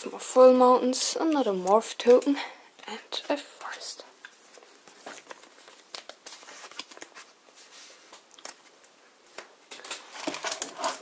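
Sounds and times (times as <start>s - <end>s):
trading cards rustling: 3.6s - 11.0s.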